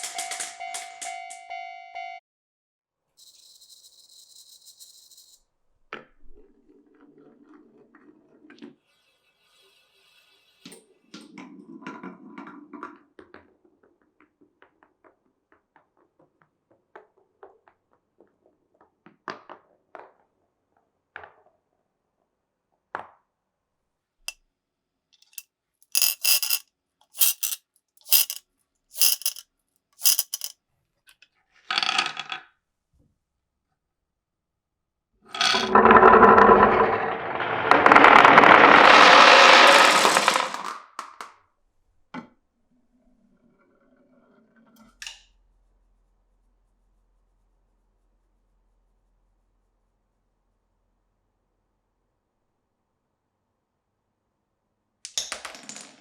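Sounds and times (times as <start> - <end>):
marbles rolling on wooden track: 0.0 - 0.6, 25.2 - 26.6, 27.2 - 28.4, 29.0 - 29.4, 30.0 - 30.5, 31.7 - 32.4, 35.3 - 40.8, 55.1 - 56.0
marbles clinking: 25.2 - 26.6, 27.2 - 28.4, 29.0 - 29.4, 30.0 - 30.5, 37.7 - 40.7.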